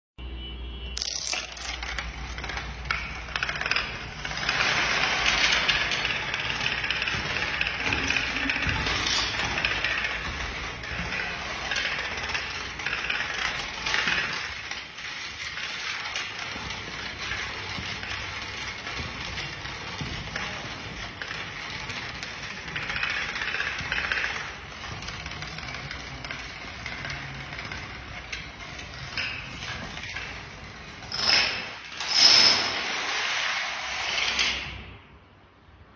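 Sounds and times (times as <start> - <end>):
dominoes toppling clatter: 1.0 - 9.9.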